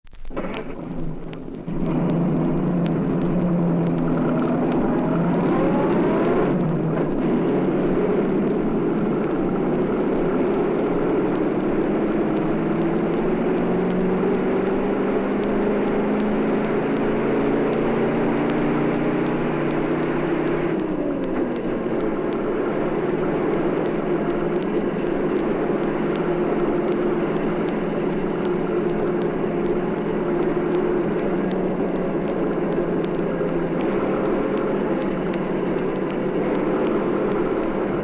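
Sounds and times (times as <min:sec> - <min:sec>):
engine running rising pitch: 0:00.4 - 0:38.0.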